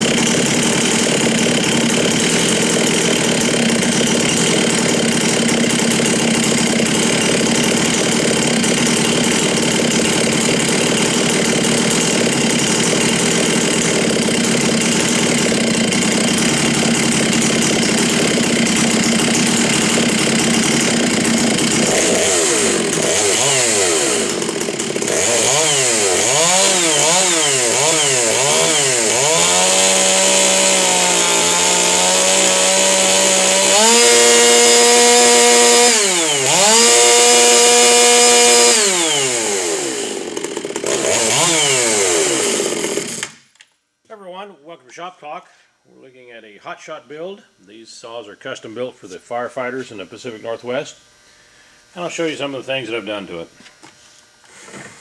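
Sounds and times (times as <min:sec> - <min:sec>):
chainsaw running at high speed: 0:00.0 - 0:43.4.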